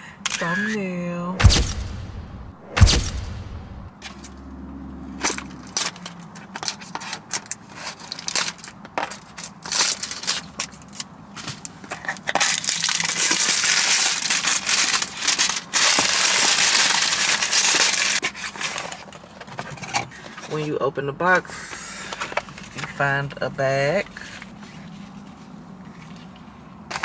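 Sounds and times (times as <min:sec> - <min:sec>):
packaging crackling and crinkling: 0:05.2 - 0:20.7, 0:22.0 - 0:27.0.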